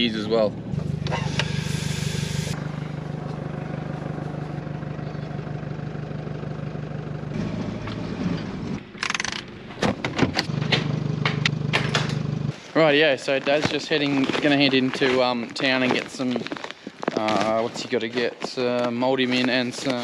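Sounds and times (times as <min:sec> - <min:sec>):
vehicle engine running: 0:00.0 - 0:20.0
sharp clicks and knocks: 0:08.9 - 0:12.3.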